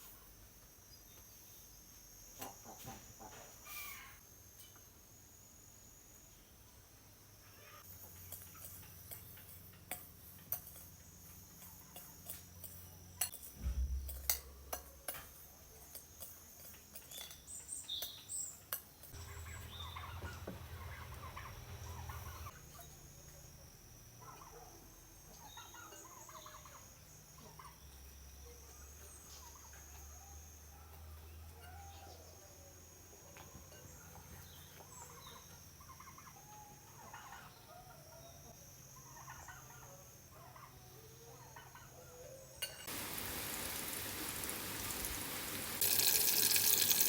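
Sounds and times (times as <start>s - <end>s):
farmyard fowl calling: 19.2s - 22.5s.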